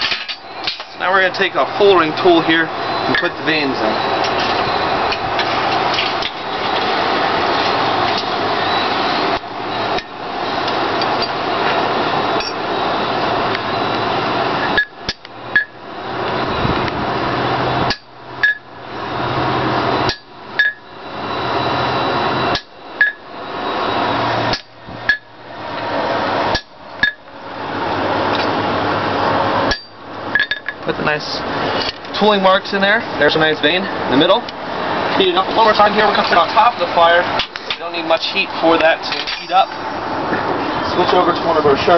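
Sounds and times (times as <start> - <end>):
forge blower rushing: 0.0 - 41.9
hammer striking metal on anvil: 29.7 - 30.6.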